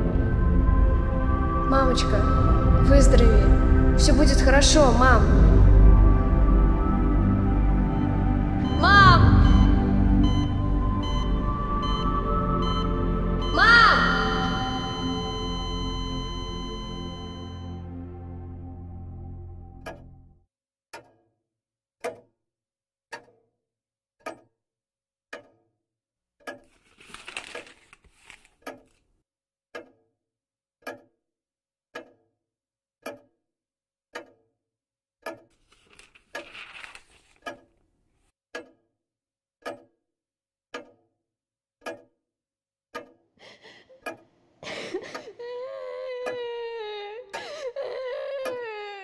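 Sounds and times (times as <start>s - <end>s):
clock ticking: 19.8s - 20.1s, 22.0s - 22.3s, 24.2s - 24.5s, 25.3s - 25.6s, 26.4s - 26.8s, 29.7s - 30.0s, 30.8s - 31.1s, 31.9s - 32.2s, 33.0s - 33.3s, 34.1s - 34.4s, 35.2s - 35.5s, 38.5s - 38.8s, 39.6s - 40.0s, 40.7s - 41.0s, 41.8s - 42.2s, 42.9s - 43.2s, 44.0s - 45.4s, 46.2s - 46.6s
soft rustling: 26.7s - 28.6s, 35.6s - 37.5s
person whimpering: 44.7s - 49.0s.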